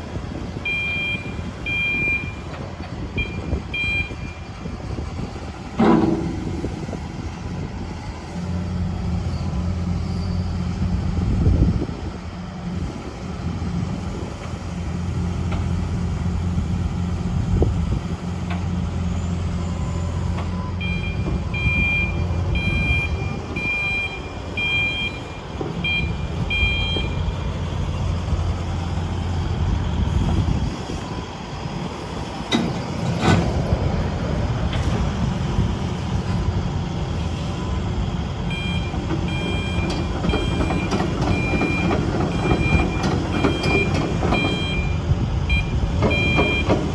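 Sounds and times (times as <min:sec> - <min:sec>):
excavator diesel engine running: 0:00.0 - 0:46.9
two-tone warning alarm beeping: 0:00.6 - 0:04.4, 0:19.9 - 0:27.5, 0:38.4 - 0:46.9.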